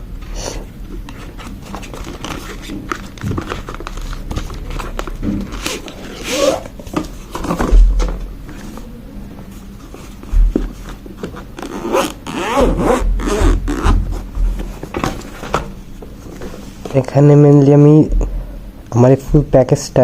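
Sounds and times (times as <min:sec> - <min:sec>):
plastic and cardboard scraping: 0:01.0 - 0:08.8.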